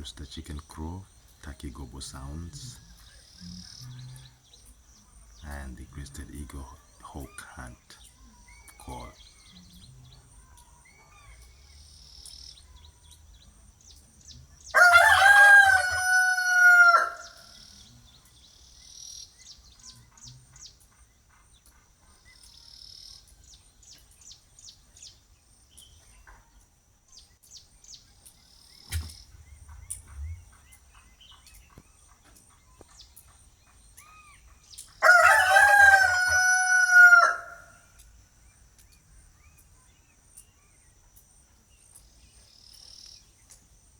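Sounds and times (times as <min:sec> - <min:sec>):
faint small-bird chirps: 0:00.0 - 0:14.8, 0:17.2 - 0:35.1, 0:37.5 - 0:43.9
rooster crowing: 0:14.7 - 0:17.6, 0:35.0 - 0:37.9.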